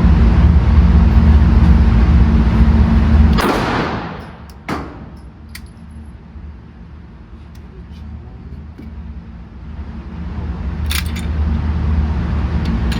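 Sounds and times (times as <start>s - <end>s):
loud low rumble: 0.0s - 12.9s
pistol shots: 3.4s - 5.2s.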